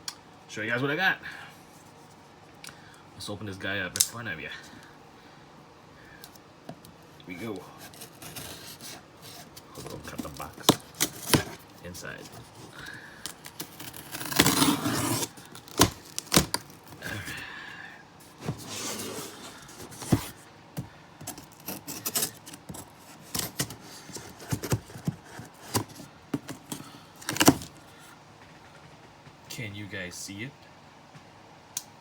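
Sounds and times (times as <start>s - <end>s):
knife cutting cardboard: 7.3s - 17.5s, 18.2s - 20.4s, 21.2s - 27.8s
taps and knocks on box: 23.4s - 27.7s.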